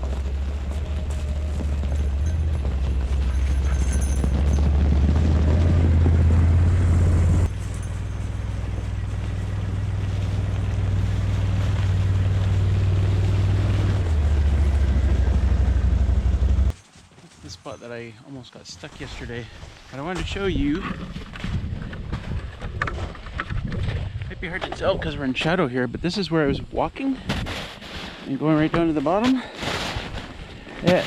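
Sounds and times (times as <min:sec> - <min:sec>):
atv engine running: 0:00.0 - 0:16.8.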